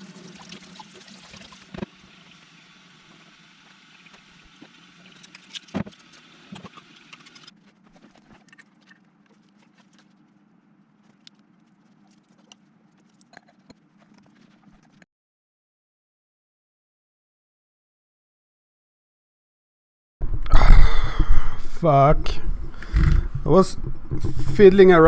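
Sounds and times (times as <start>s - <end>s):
steady low hum: 20.2s - 25.0s.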